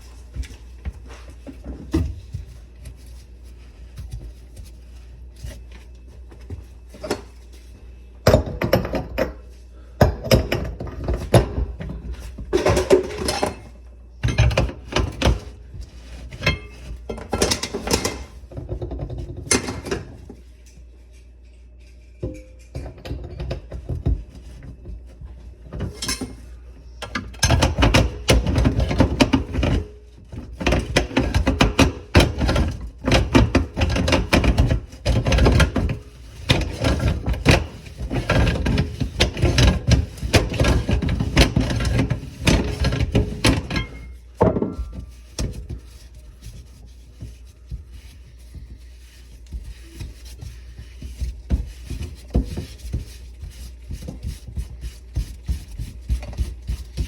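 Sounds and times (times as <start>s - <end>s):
objects being handled: 25.8s - 57.0s.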